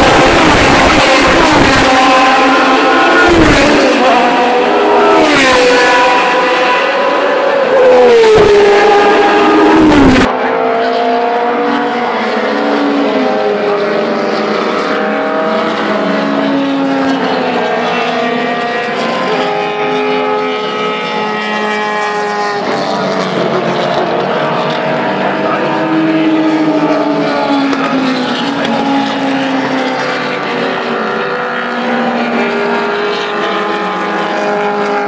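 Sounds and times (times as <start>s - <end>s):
distant racing engines: 0.0s - 35.0s
racing car passing at high revs: 0.0s - 35.0s.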